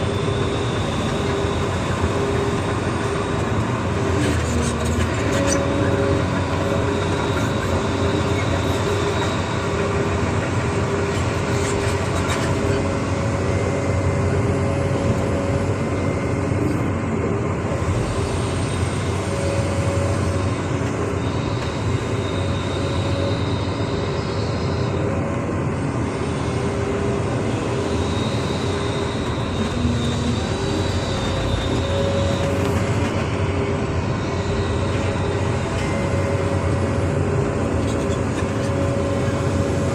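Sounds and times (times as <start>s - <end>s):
diesel engine running under load: 0.0s - 39.9s
high whine: 0.0s - 39.9s.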